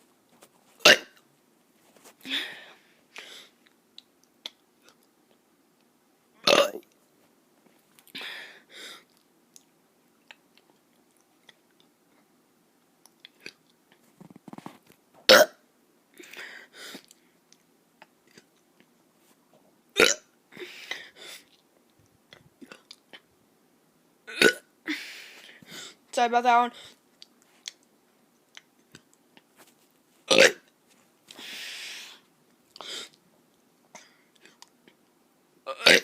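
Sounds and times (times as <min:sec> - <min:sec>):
child burping: 0:00.8 - 0:01.2, 0:06.4 - 0:06.8, 0:20.0 - 0:20.3, 0:24.3 - 0:24.7, 0:30.3 - 0:30.7, 0:35.7 - 0:36.0.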